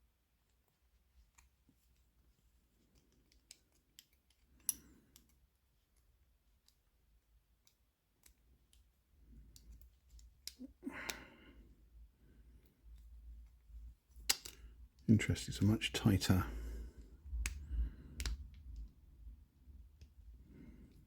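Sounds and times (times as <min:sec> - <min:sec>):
small metallic clicks: 0:02.8 - 0:06.9.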